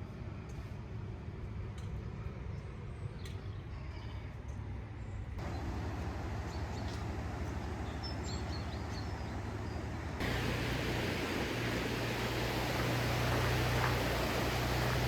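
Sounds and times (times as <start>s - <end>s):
wind buffeting microphone: 10.2s - 15.0s.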